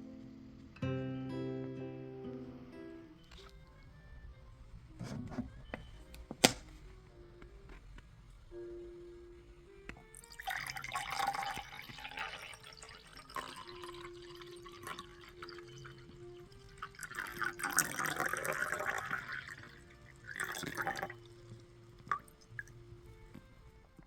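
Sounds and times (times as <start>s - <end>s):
soft background music: 0.0s - 24.0s.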